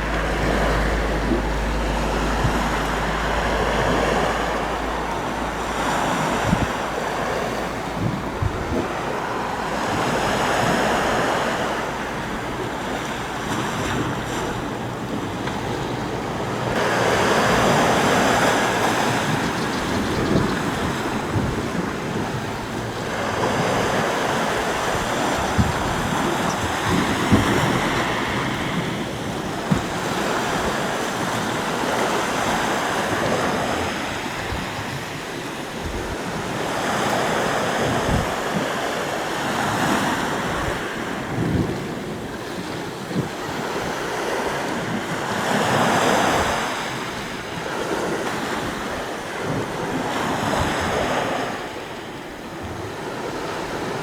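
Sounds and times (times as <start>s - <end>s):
sea waves breaking ashore: 0.0s - 54.0s
wind buffeting microphone: 0.0s - 54.0s.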